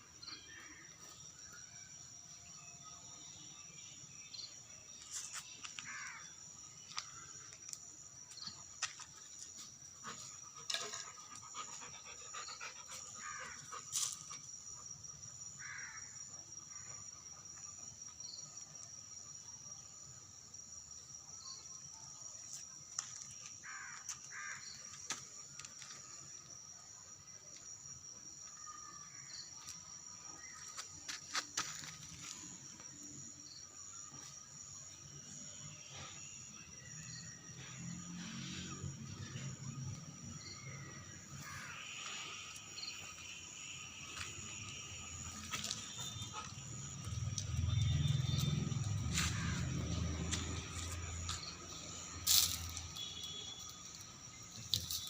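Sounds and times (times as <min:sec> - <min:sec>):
high-pitched insect drone: 0:35.6 - 0:55.0.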